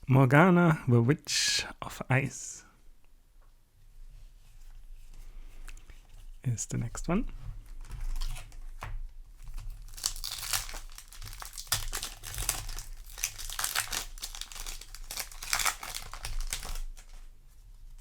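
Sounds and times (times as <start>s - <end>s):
foil wrapper crinkling and tearing: 7.7s - 17.4s.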